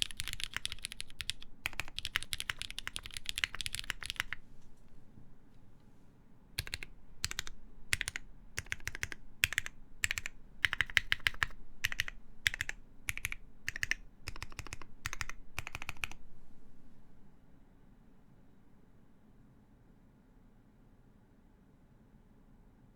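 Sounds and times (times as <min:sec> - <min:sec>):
typing on mechanical keyboard: 0:00.0 - 0:04.4, 0:06.6 - 0:16.2.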